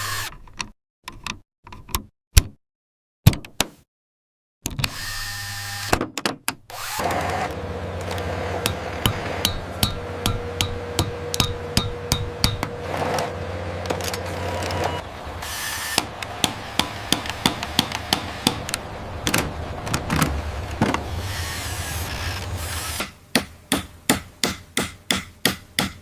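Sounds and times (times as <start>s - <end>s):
low steady hum: 7.5s - 15.4s
hammer tapping on wood: 8.6s - 12.7s.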